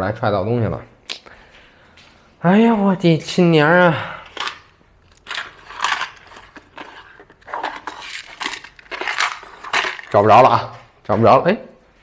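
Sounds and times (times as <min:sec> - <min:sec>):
rummaging through parts and tools: 0:04.1 - 0:10.6.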